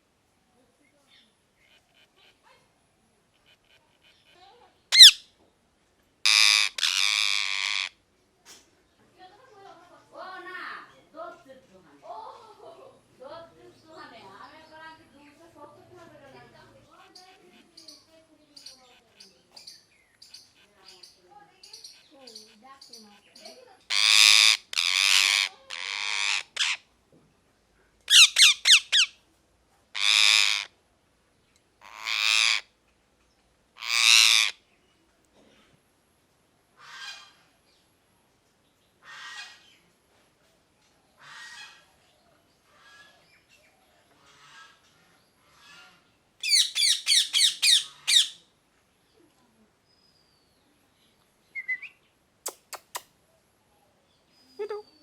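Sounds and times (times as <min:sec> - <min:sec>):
parrot screeching: 0:04.9 - 0:05.2, 0:06.3 - 0:07.9, 0:23.9 - 0:26.8, 0:28.1 - 0:29.1, 0:30.0 - 0:30.7, 0:31.8 - 0:32.7, 0:33.8 - 0:34.6, 0:46.4 - 0:48.4.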